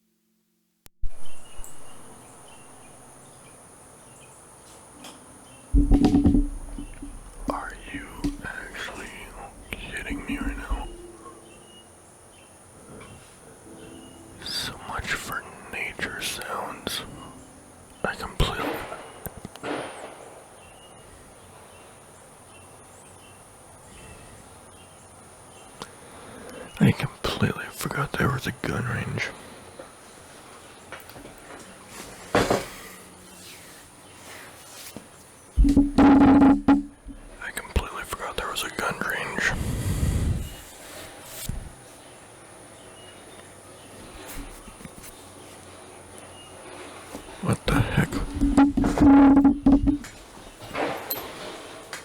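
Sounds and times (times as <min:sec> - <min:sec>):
faint bird chirps: 0:01.0 - 0:19.2
insects buzzing: 0:01.1 - 0:51.1.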